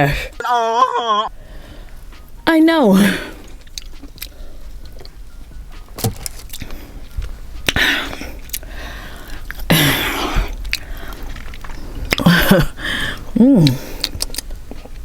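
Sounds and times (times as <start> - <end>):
mouth clicks and eating noises: 3.4 - 5.2, 5.8 - 15.0
breathy bursts: 7.7 - 11.5, 12.3 - 14.2.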